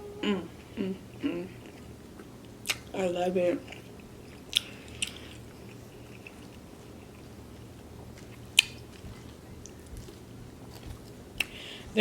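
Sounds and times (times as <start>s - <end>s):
faint low hum: 0.0s - 12.0s
person chewing food: 3.6s - 11.9s.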